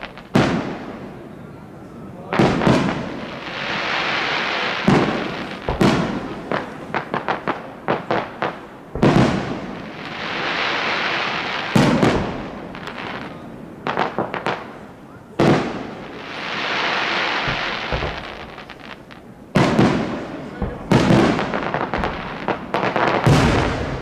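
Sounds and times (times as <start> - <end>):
hissing crackle: 0.0 - 0.3, 3.3 - 7.6, 15.9 - 24.0
sharp cracks: 0.0 - 0.4, 4.8 - 10.3, 16.9 - 24.0
fireworks bangs: 0.0 - 24.0.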